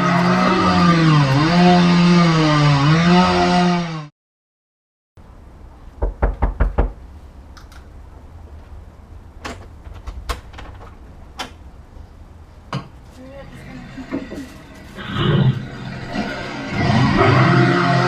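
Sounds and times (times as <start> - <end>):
knuckles knocking on door: 6.0 - 7.0.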